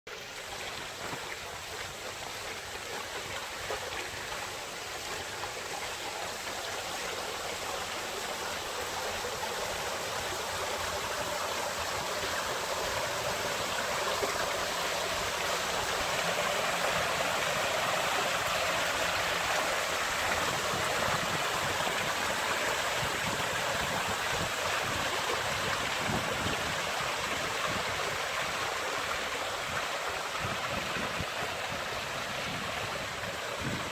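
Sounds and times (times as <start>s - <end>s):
waterfall splashing into pond: 0.1s - 33.9s.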